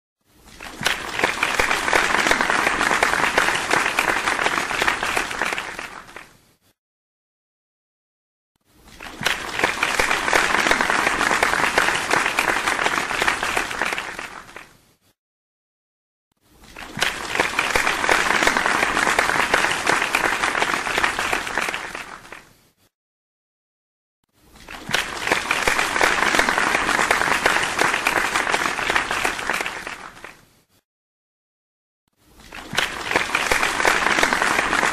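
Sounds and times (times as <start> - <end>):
audience applause: 0.5 - 6.3, 8.9 - 14.7, 16.7 - 22.5, 24.6 - 30.4, 32.4 - 34.9.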